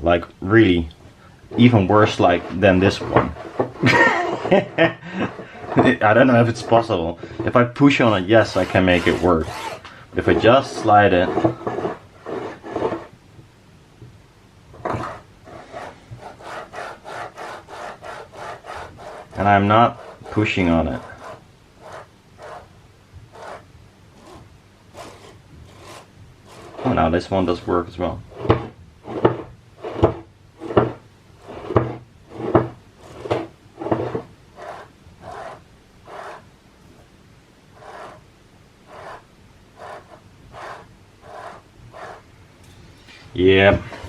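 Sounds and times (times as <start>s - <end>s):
linear guide carriage rasping on rail: 8.1s - 9.8s.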